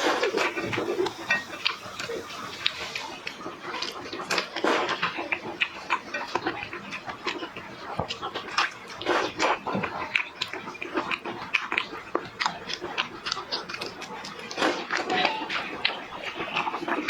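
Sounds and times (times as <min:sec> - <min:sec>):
person chewing and sucking seafood: 0:00.0 - 0:07.5.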